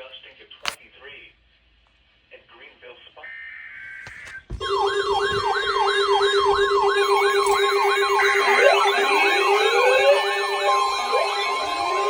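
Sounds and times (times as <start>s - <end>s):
electronic siren fast yelp: 3.3s - 12.0s
siren slow rising sweeps: 4.6s - 12.0s.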